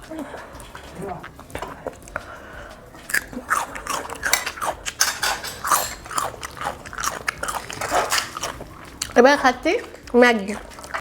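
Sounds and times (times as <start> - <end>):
crunching and chewing crisp food: 0.0 - 11.0
cutlery clinking on plate: 3.9 - 8.7.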